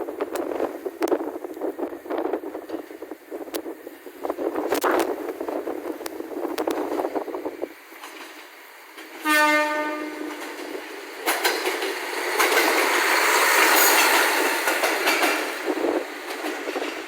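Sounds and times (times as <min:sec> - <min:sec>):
train passing with rushing wheels: 0:00.0 - 0:17.0
train horn: 0:09.2 - 0:10.5.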